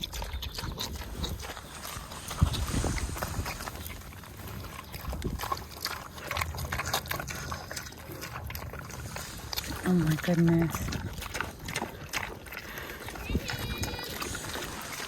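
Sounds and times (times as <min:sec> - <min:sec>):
pigs chomping feed: 0:00.0 - 0:15.0.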